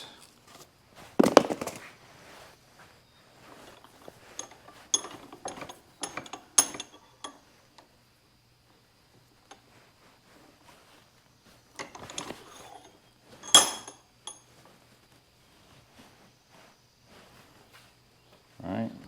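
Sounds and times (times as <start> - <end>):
metallic clicks of tools and washer: 3.8 - 7.4, 11.8 - 14.4.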